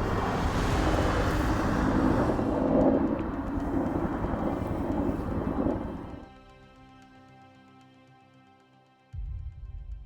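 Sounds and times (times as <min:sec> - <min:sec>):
helicopter rotor rumble: 0:00.0 - 0:06.3.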